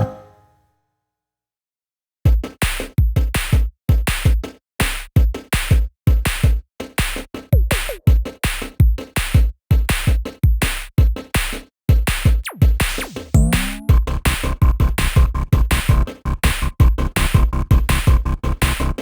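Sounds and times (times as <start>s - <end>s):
electronic drum machine music: 6.4s - 9.4s, 12.3s - 19.0s.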